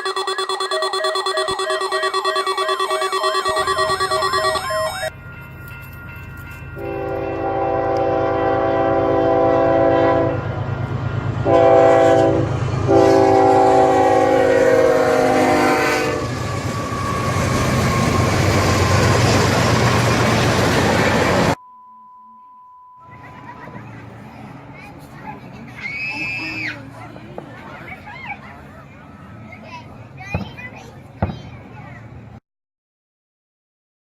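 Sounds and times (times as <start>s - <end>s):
electronic warble: 0.0s - 5.1s
horn blasts: 0.0s - 5.1s, 6.8s - 10.6s, 11.4s - 16.5s.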